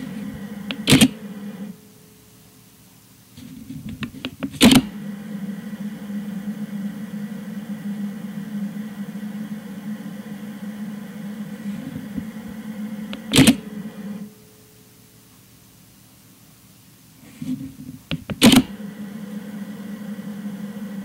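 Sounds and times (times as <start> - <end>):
camera lens hissing hum: 0.0 - 14.4, 15.3 - 21.0
loud camera clicks: 0.6 - 1.4, 4.3 - 5.0, 13.2 - 13.8.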